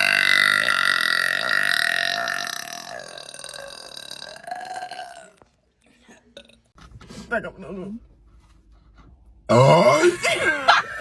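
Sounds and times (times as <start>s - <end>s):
long loud burp: 0.0s - 5.4s, 9.5s - 10.1s.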